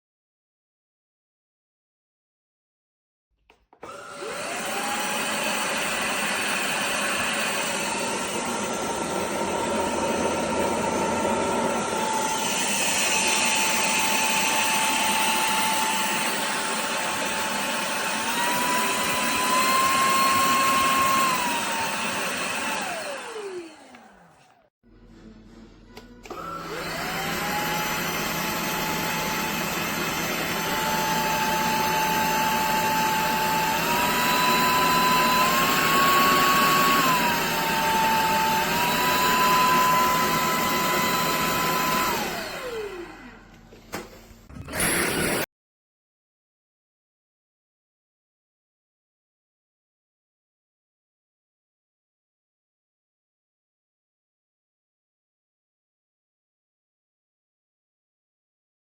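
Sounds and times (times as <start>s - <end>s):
vacuum motor whine: 3.8s - 45.4s.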